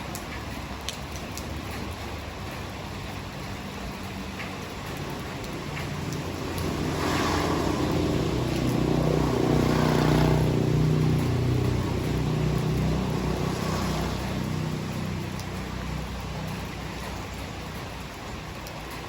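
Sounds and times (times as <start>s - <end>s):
heavy rain: 0.0s - 19.0s
vehicle engine passing by: 5.5s - 17.6s.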